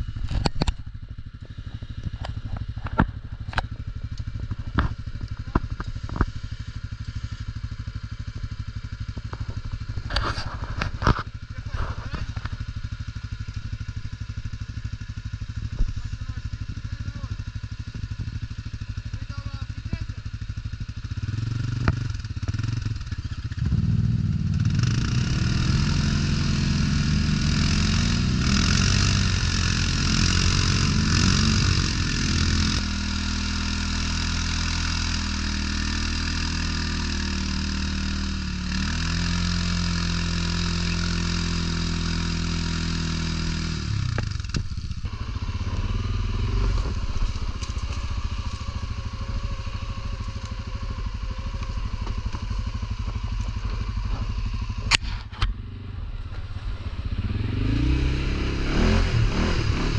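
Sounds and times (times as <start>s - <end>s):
atv engine running: 0.0s - 59.9s.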